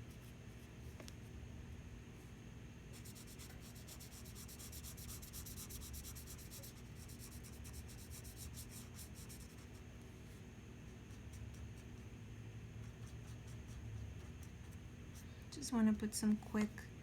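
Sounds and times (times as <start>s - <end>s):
steady low hum: 0.0s - 17.0s
pencil scratching on paper: 3.0s - 9.8s.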